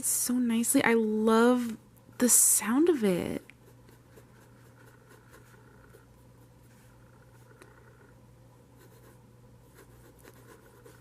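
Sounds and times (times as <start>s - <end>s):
pen nib scratching on paper: 3.4s - 7.7s, 8.8s - 11.0s.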